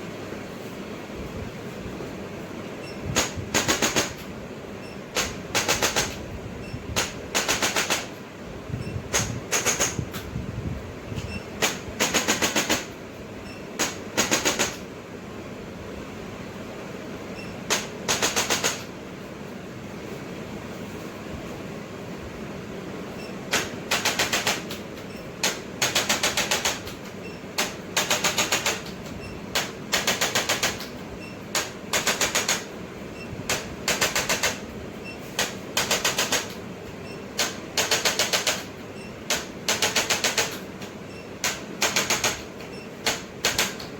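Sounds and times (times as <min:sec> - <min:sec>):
rapid clicks of percussion device: 0:03.1 - 0:04.3, 0:05.1 - 0:06.2, 0:07.0 - 0:08.2, 0:09.1 - 0:10.2, 0:11.6 - 0:12.9, 0:13.8 - 0:14.8, 0:17.7 - 0:18.9, 0:23.5 - 0:32.7, 0:33.5 - 0:34.7, 0:35.4 - 0:36.6, 0:37.4 - 0:43.9.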